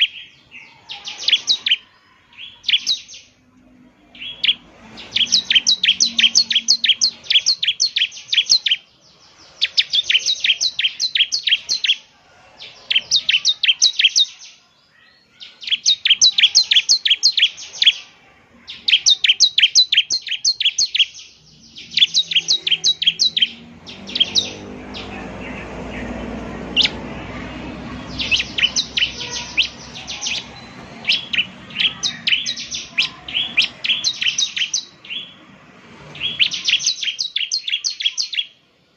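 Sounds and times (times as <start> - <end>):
bird singing sharp chipping notes: 4.2 - 12.0, 18.7 - 35.4
low rumbling noise: 21.4 - 36.9.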